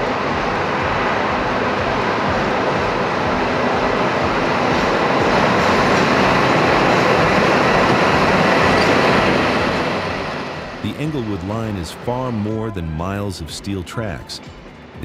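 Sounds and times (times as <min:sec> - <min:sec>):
train wheels rolling on track: 0:00.0 - 0:15.0.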